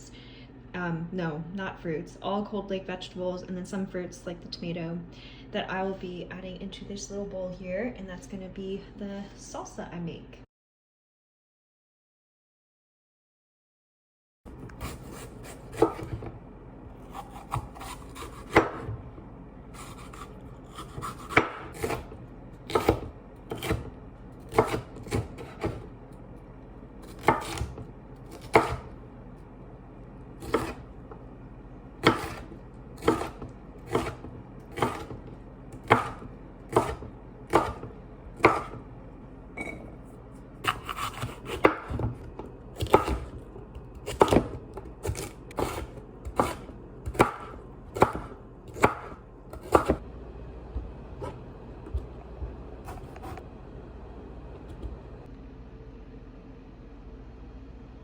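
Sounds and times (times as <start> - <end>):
knife chopping on cutting board: 14.6 - 16.3, 17.0 - 19.0, 19.8 - 25.9, 27.0 - 29.0, 30.4 - 30.9, 32.0 - 38.8, 40.6 - 50.0, 51.2 - 53.4.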